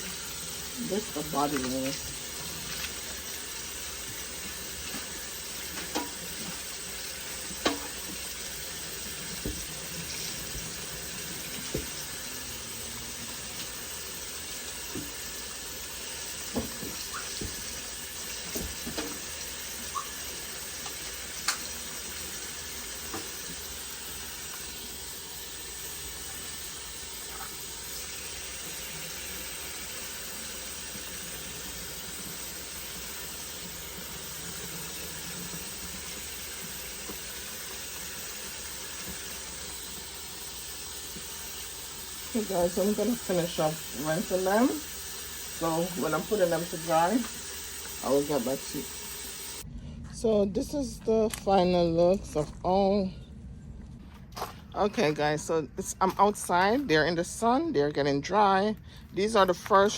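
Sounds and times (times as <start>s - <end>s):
tap water running into sink: 0.0s - 49.6s
knocks and splashes: 9.4s - 9.8s.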